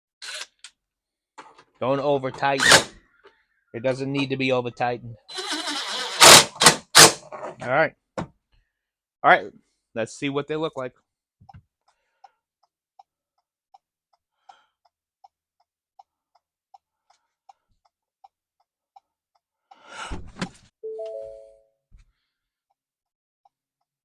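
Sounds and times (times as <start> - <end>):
brief multi-pitch tone: 20.8 - 21.7.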